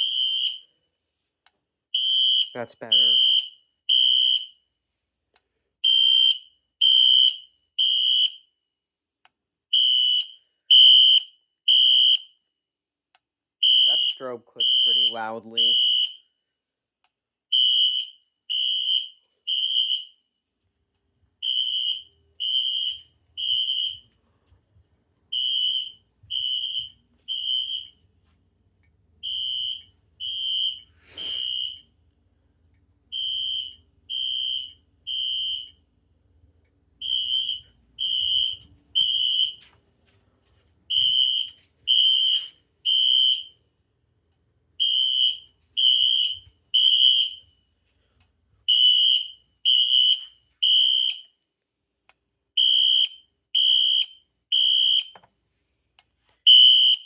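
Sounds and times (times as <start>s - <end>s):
fire alarm horn beeps: 0.0s - 0.8s, 1.9s - 4.6s, 5.8s - 8.5s, 9.7s - 12.4s, 13.6s - 16.3s, 17.5s - 20.2s, 21.4s - 24.1s, 25.3s - 28.1s, 29.2s - 32.0s, 33.1s - 35.8s, 37.0s - 39.7s, 40.9s - 43.6s, 44.8s - 47.8s, 48.6s - 51.4s, 52.6s - 55.2s, 56.4s - 57.0s.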